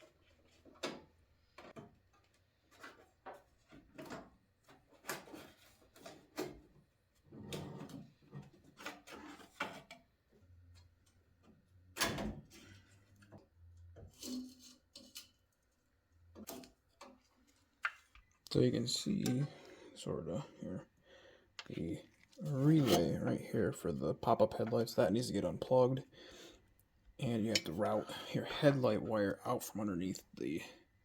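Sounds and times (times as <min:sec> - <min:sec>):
tools and car parts handled: 0:00.0 - 0:06.9, 0:07.6 - 0:11.6, 0:12.3 - 0:18.4.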